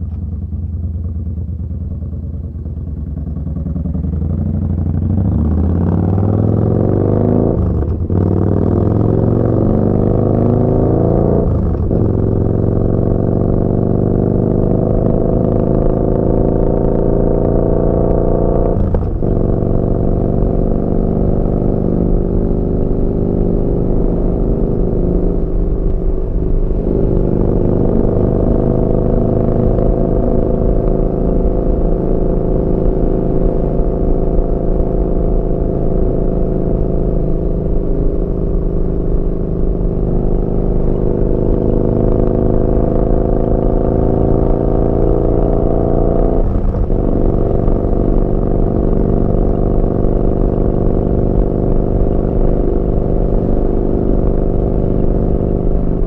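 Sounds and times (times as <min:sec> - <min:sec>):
motorcycle engine accelerating: 0:00.0 - 0:56.0.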